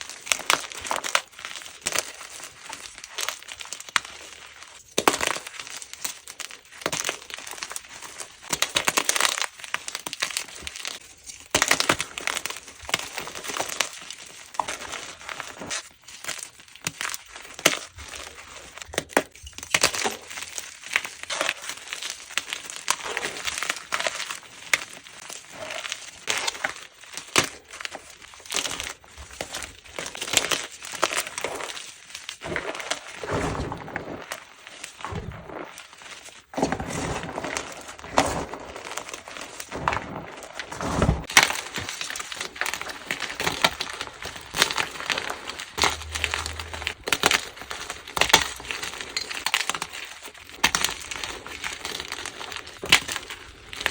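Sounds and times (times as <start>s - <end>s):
chalk blocks crunching: 20.6s - 53.9s.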